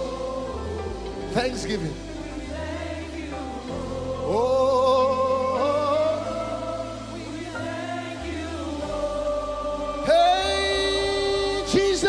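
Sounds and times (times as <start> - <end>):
sustained backing chords: 0.0 - 12.0.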